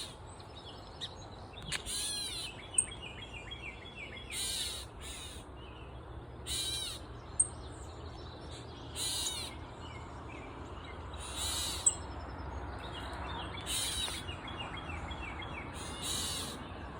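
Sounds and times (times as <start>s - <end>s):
catbird harsh scratchy call: 1.8s - 2.6s, 4.3s - 5.4s, 6.5s - 7.0s, 9.0s - 9.5s, 11.2s - 11.9s, 13.7s - 14.2s, 15.8s - 16.6s.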